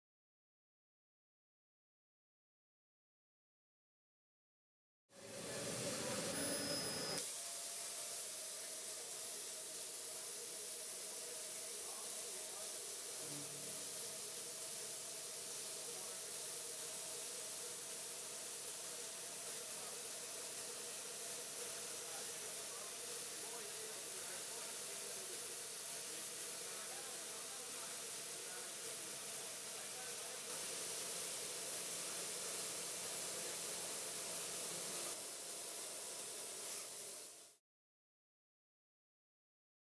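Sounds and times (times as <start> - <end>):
milling machine hissing and humming: 5.2 - 37.6.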